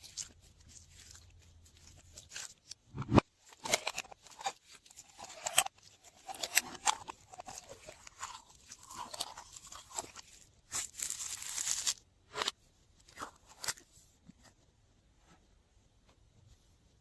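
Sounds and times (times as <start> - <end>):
slime squishing and crackling: 3.4 - 12.5.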